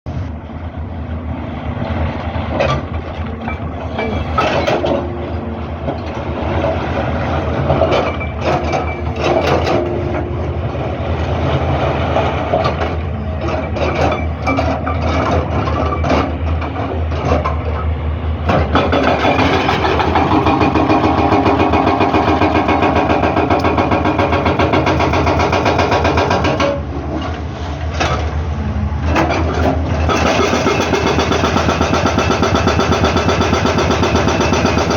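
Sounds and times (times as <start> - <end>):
excavator diesel engine running: 0.1 - 34.9
metal knocks and clanks: 2.5 - 10.5, 18.4 - 27.4, 29.1 - 34.9.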